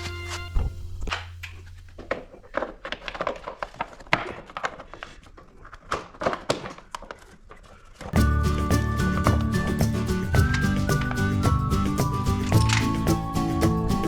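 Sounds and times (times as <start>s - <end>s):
background music: 0.0s - 1.1s, 8.2s - 14.0s.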